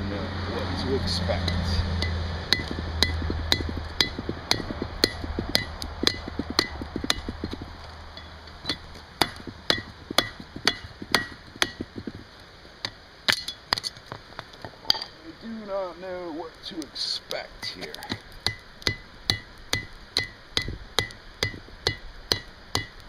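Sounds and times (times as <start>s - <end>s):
hammer ringing on anvil: 1.4s - 6.8s.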